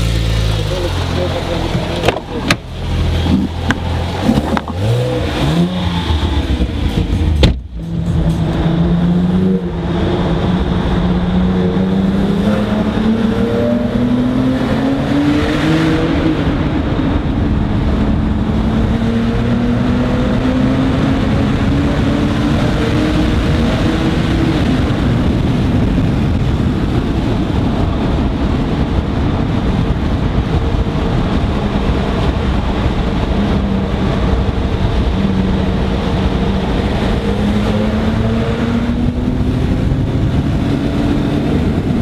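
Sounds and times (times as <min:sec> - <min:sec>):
exhaust crack: 0:00.0 - 0:08.9
sports car engine revving: 0:00.0 - 0:42.0.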